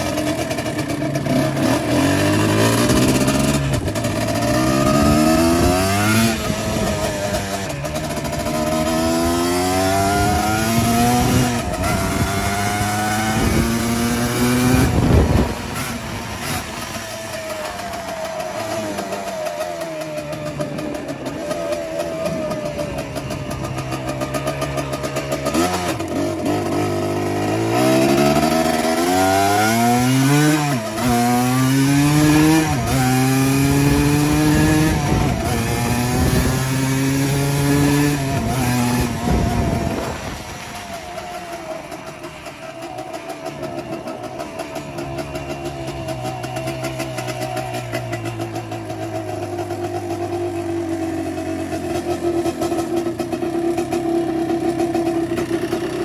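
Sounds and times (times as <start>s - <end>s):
two-stroke engine accelerating: 0.0s - 56.0s.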